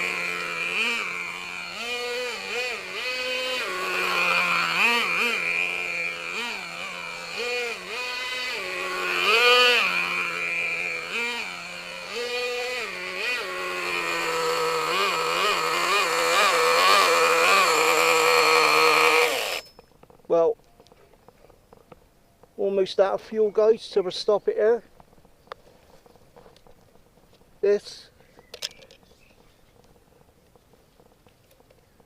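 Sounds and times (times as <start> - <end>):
small nitro engine revving: 0.0 - 19.7.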